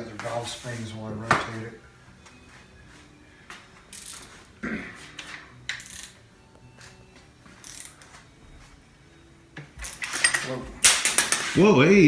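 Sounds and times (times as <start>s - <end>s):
metal parts clinking on metal: 3.9s - 4.4s, 5.2s - 6.2s, 7.6s - 8.0s, 9.8s - 11.6s.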